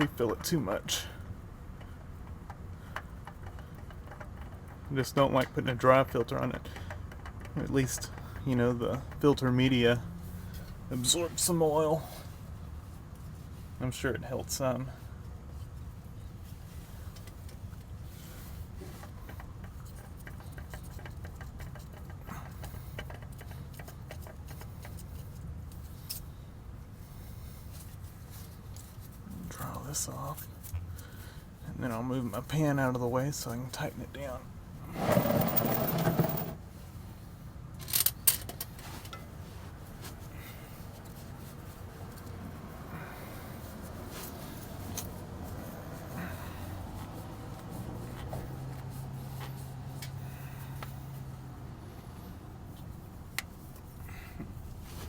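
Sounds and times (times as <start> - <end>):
scrapes and clicks of oil filter: 1.7 - 9.5, 15.5 - 26.4, 27.2 - 31.4.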